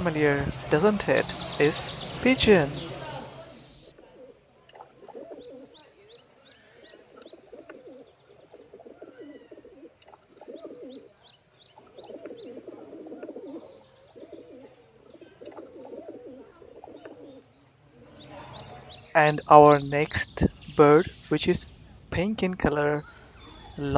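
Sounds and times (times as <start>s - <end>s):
pigeons cooing: 0.0s - 6.0s, 6.6s - 11.2s, 11.8s - 17.6s
small birds chirping: 0.0s - 23.9s.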